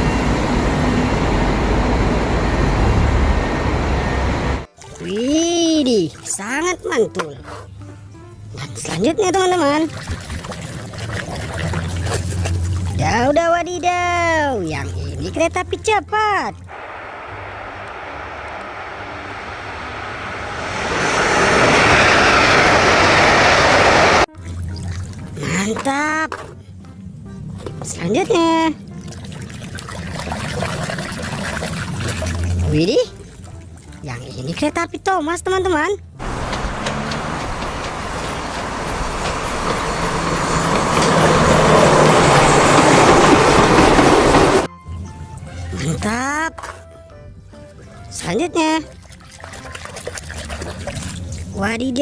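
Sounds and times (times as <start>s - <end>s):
high-speed train rushing past: 0.0s - 4.7s, 16.7s - 24.3s, 36.2s - 44.7s.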